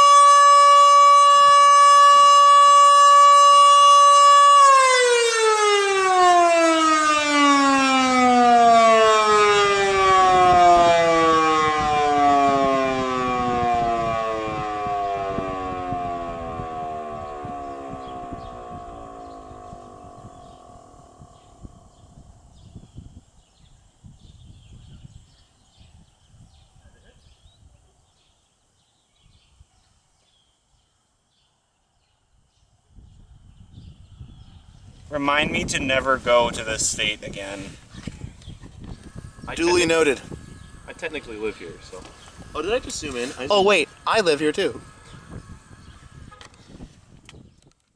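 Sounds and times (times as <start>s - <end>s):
tornado siren winding down: 0.0s - 23.1s, 35.2s - 47.2s
bird chirps: 17.2s - 32.8s, 41.9s - 42.4s.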